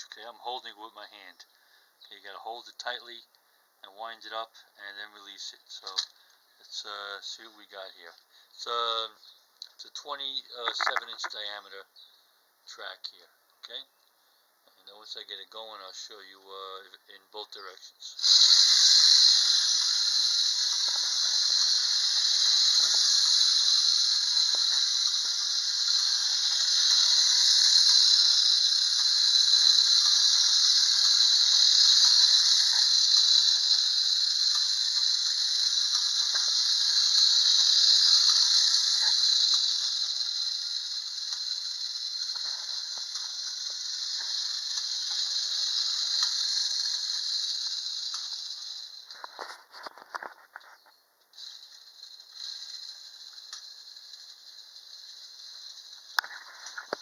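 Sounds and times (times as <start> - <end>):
small clicks: 10.6 - 11.5, 18.2 - 57.0
clockwork toy gears whirring: 18.2 - 50.3, 51.4 - 57.0.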